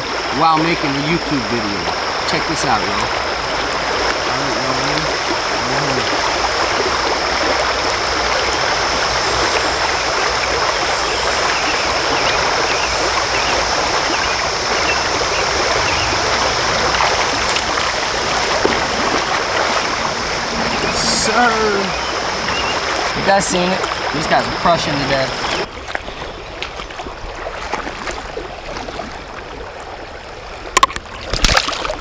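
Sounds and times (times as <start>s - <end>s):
creek water running over riffles: 0.0s - 32.0s.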